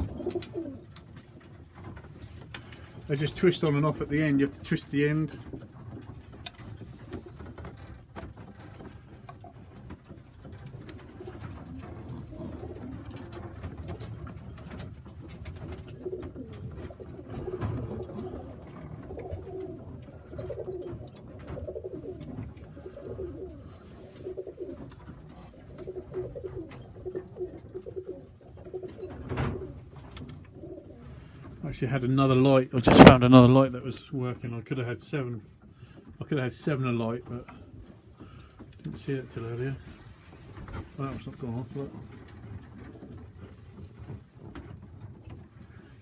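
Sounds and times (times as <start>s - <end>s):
pigeons cooing: 0.0s - 4.6s, 5.3s - 31.6s.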